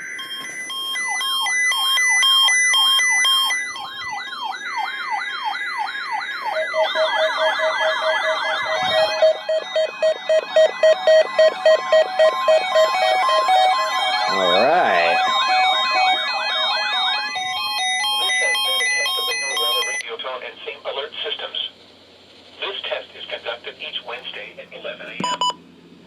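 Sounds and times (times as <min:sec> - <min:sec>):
low pulsing beep: 0:00.0 - 0:03.8, 0:06.6 - 0:20.0, 0:25.2 - 0:25.6
steady beeps: 0:00.0 - 0:03.8, 0:06.6 - 0:20.0, 0:25.2 - 0:25.6
warbling siren tones: 0:00.0 - 0:20.0.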